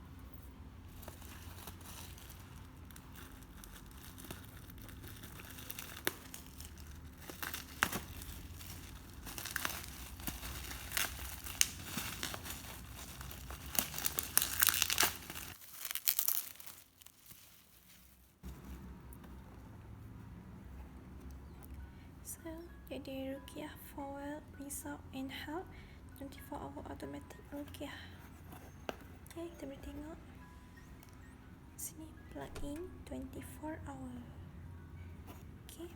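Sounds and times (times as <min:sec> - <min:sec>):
packaging crinkling and tearing: 0:00.9 - 0:18.7.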